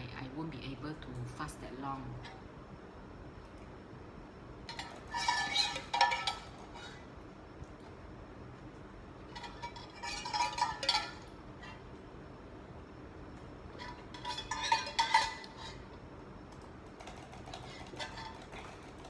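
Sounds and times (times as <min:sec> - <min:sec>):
cutlery clinking against dishes: 0:04.7 - 0:07.0, 0:09.3 - 0:11.3, 0:13.8 - 0:15.8.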